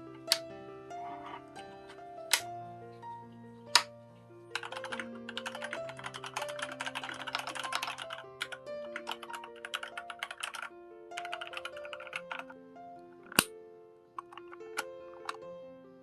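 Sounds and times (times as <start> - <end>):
background music: 0.0 - 16.0
mechanical keyboard typing: 4.6 - 12.5.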